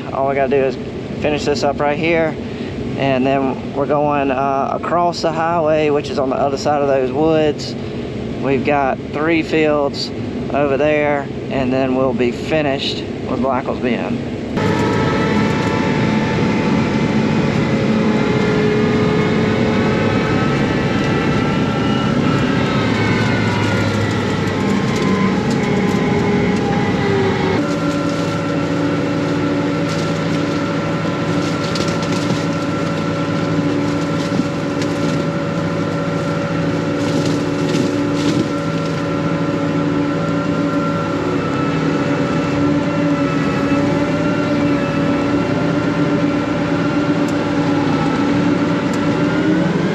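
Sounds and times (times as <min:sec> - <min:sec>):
combine harvester drone: 0:00.0 - 0:49.9.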